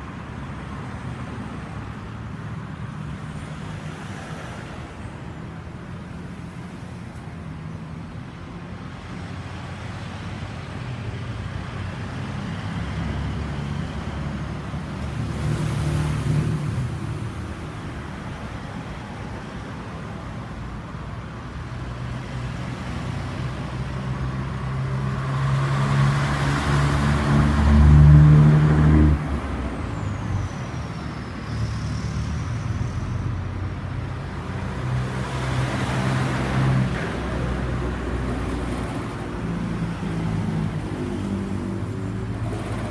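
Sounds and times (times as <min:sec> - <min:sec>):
passing traffic whoosh: 0:00.0 - 0:42.9.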